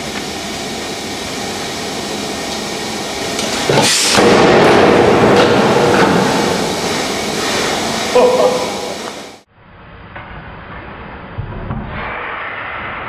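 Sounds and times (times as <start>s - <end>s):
hydraulic press running: 0.0s - 9.4s.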